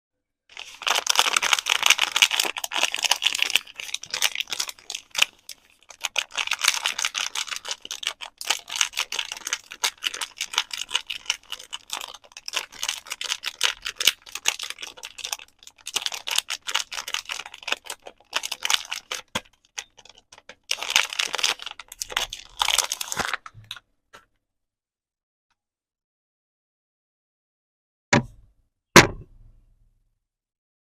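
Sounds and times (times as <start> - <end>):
packaging crinkling: 0.5 - 23.8.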